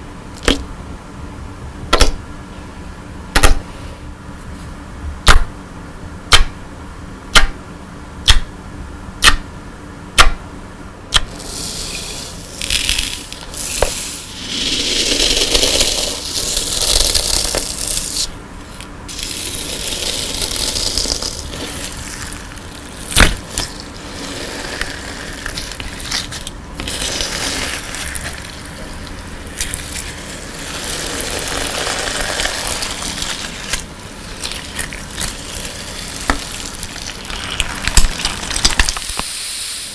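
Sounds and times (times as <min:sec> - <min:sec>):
slime crackling and squishing: 0:11.3 - 0:39.2.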